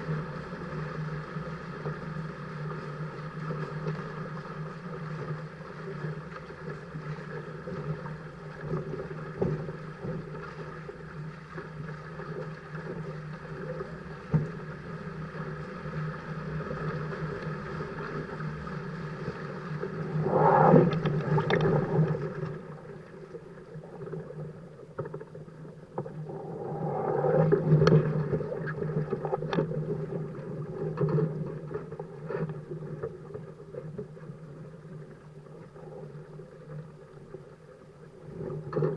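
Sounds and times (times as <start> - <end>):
water rushing along hulls: 0.0 - 38.9
steady hum: 19.2 - 24.3.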